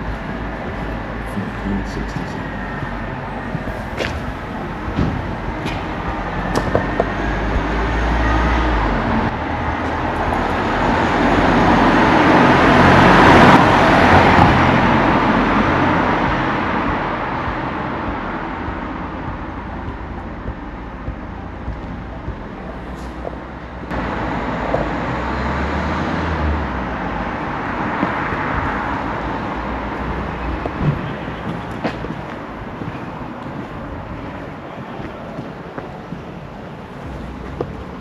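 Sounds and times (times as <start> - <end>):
vehicle passing by: 3.7 - 19.1, 22.6 - 33.2.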